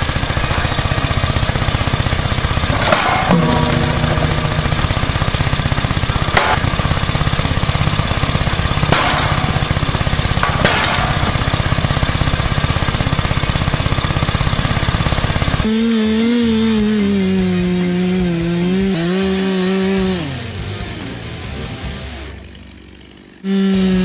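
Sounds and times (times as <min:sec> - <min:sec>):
sharp cracks: 0:00.0 - 0:16.4
heavy machine hammering chatter: 0:00.0 - 0:24.0.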